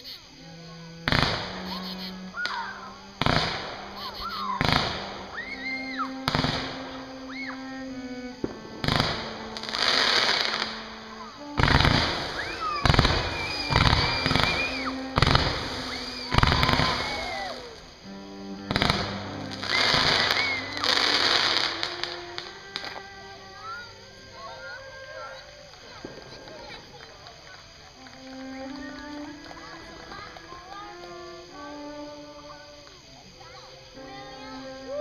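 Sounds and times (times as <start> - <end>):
music: 0.0 - 35.0
whistling firework shells: 1.0 - 23.9, 24.6 - 32.0
fireworks bangs with crackle: 1.1 - 1.6, 3.2 - 3.8, 4.5 - 5.2, 6.2 - 6.8, 8.4 - 10.8, 11.6 - 17.7, 18.7 - 23.0, 25.8 - 27.8.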